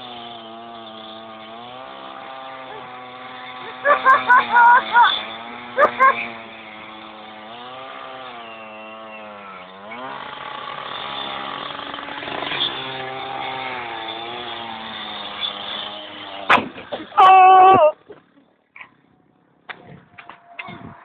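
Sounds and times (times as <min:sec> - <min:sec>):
petrol saw cutting metal: 0:00.0 - 0:17.2.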